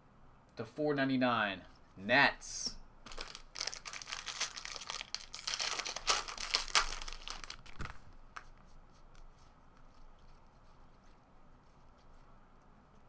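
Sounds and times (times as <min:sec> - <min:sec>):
wrapper tearing and crinkling: 0:03.1 - 0:08.1.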